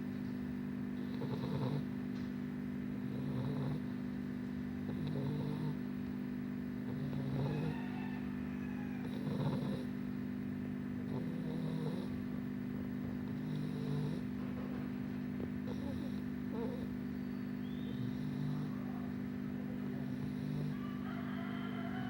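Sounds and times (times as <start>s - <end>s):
dog snoring: 1.0s - 2.2s, 2.9s - 4.2s, 4.8s - 5.9s, 6.7s - 10.2s, 10.8s - 14.6s, 15.4s - 21.0s.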